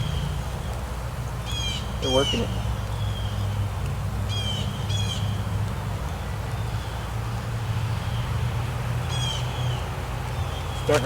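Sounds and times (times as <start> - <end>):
bird calling: 1.4 - 3.6, 9.0 - 11.0.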